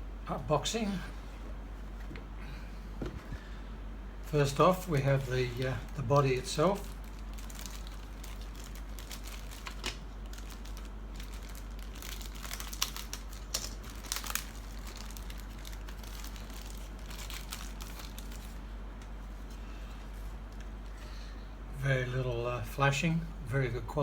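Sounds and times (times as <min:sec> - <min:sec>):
steady low hum: 0:00.0 - 0:24.0
plastic packaging crinkling: 0:04.3 - 0:18.7.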